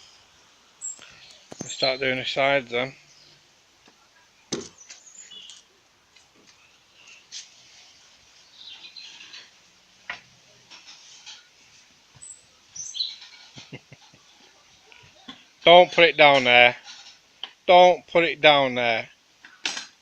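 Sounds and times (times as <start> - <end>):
faint bird chirps: 4.1 - 5.7, 12.2 - 15.5.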